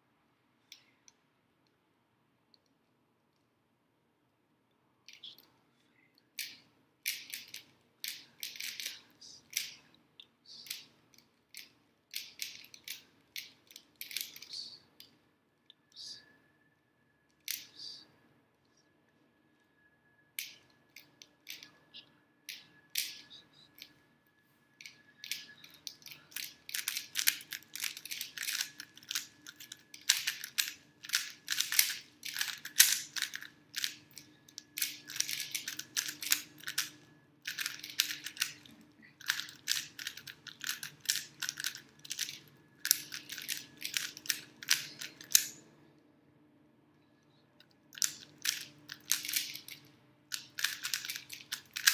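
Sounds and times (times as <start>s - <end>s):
puzzle cube plastic clicking: 6.4s - 9.8s, 10.6s - 15.2s, 17.4s - 17.8s, 20.4s - 21.7s, 22.5s - 24.0s, 24.8s - 45.6s, 47.6s - 51.9s.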